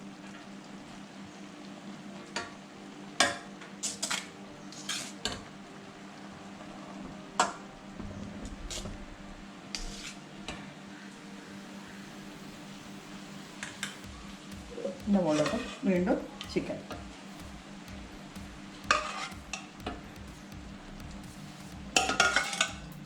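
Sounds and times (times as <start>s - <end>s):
steady low hum: 5.6s - 23.0s.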